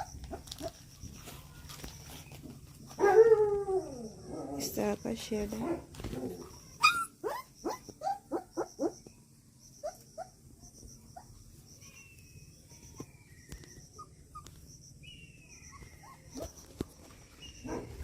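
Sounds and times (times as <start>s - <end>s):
puppies whimpering: 6.4s - 9.0s, 15.5s - 16.8s.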